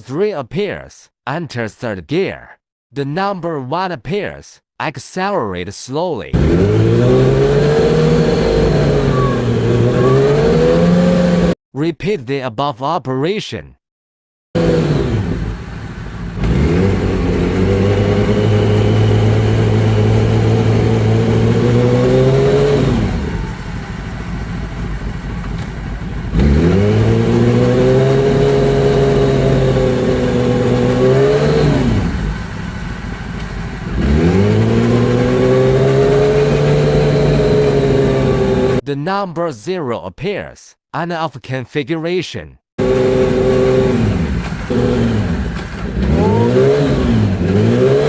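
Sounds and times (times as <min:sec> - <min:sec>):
motorcycle engine revving: 0:06.4 - 0:11.6, 0:14.6 - 0:38.8, 0:42.8 - 0:48.0.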